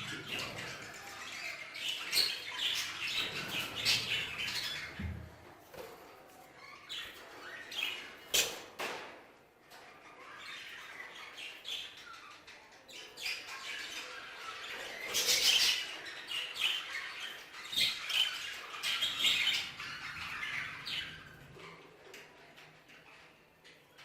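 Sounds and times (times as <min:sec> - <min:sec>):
budgerigars chirping and squawking: 0:00.0 - 0:08.7, 0:09.7 - 0:24.0.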